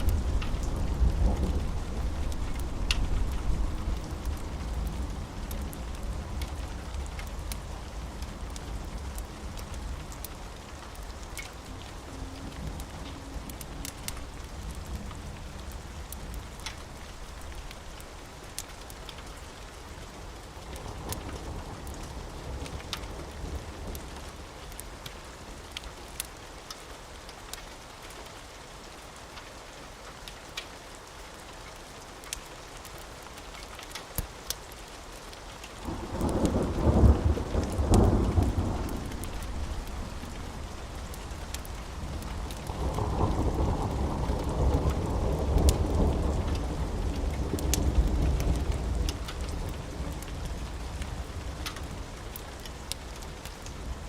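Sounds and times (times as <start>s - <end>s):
thunder rumbling: 0.0s - 18.0s, 35.8s - 54.0s
wood fire crackling: 0.0s - 29.6s, 30.2s - 54.0s
steady rain: 0.0s - 54.0s.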